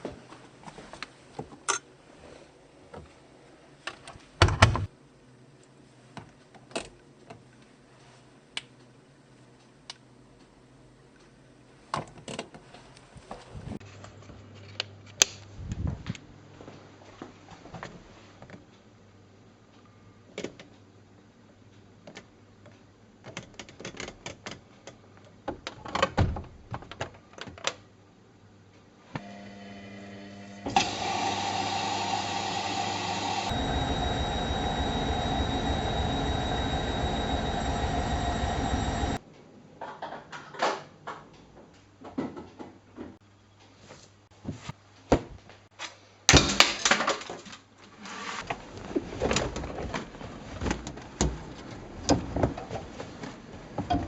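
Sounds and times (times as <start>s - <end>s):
washing machine running: 29.2s - 39.2s.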